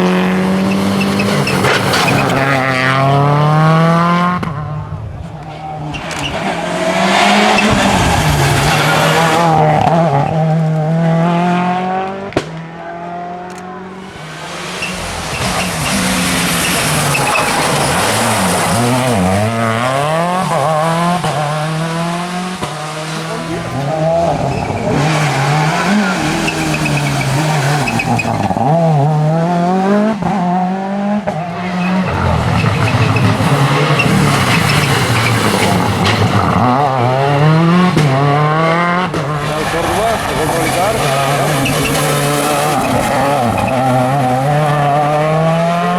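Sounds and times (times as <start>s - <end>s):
rally car engine revving: 0.0s - 45.9s
tyre noise: 0.0s - 45.9s
sharp crack: 12.0s - 29.1s.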